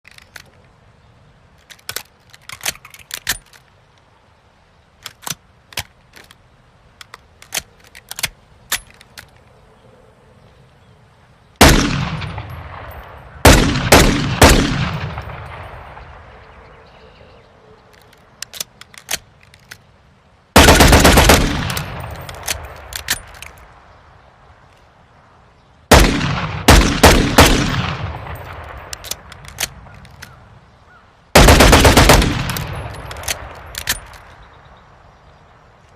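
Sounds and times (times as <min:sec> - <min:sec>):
echoing gunshots: 0:11.6 - 0:16.6, 0:20.6 - 0:23.8, 0:25.9 - 0:30.0, 0:31.4 - 0:34.3
light metallic clicks: 0:32.4 - 0:34.5.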